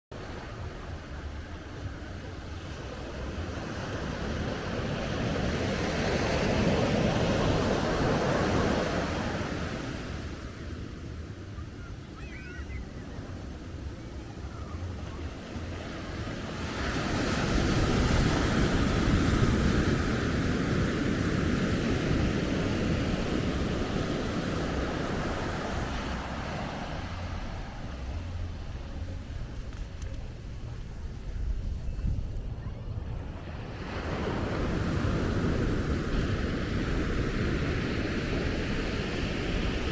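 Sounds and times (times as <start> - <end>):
surf waves washing: 0.2 - 39.9
faint high chirp: 11.6 - 15.4.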